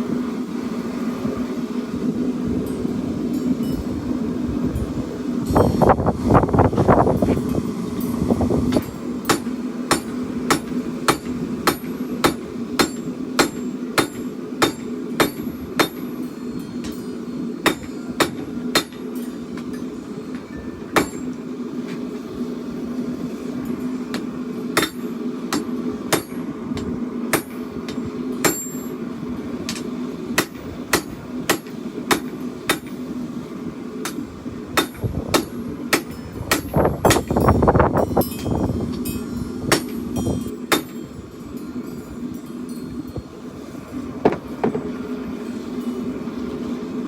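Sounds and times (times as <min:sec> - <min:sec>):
steady low hum: 0:00.0 - 0:47.0
hammer striking steel on anvil: 0:08.7 - 0:21.4, 0:23.7 - 0:29.0, 0:29.7 - 0:33.1, 0:34.0 - 0:34.2, 0:34.8 - 0:42.9.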